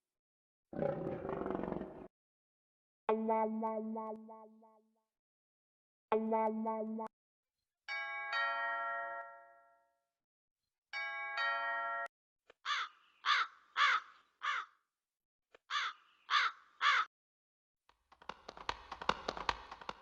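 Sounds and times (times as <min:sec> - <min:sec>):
two-tone doorbell chime: 0:07.9 - 0:10.0, 0:11.0 - 0:12.1
crow cawing: 0:12.6 - 0:14.8, 0:15.7 - 0:17.1.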